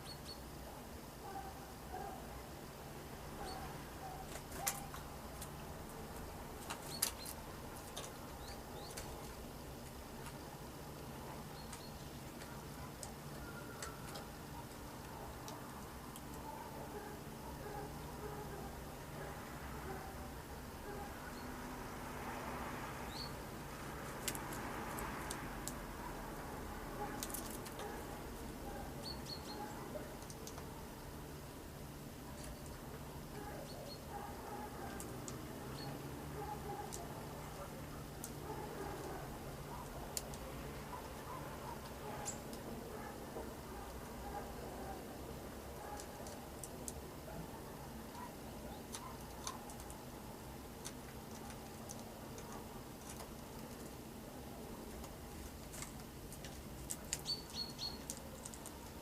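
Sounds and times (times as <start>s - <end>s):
small birds chirping: 0.0s - 0.8s, 3.3s - 18.8s, 23.0s - 23.5s, 27.0s - 31.6s, 32.3s - 45.1s, 56.3s - 59.0s
steady background hiss: 0.0s - 59.0s.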